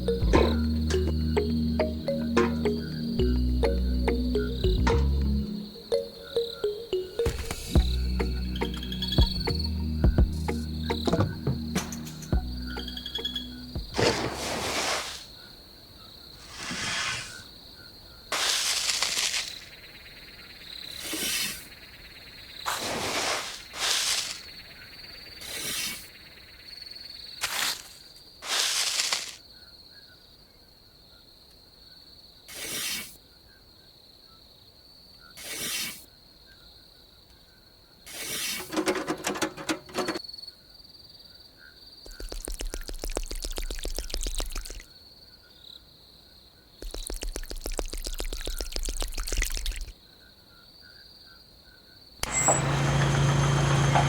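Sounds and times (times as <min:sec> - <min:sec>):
scraping or rustling bursts: 0:27.4 - 0:29.4, 0:38.1 - 0:40.2.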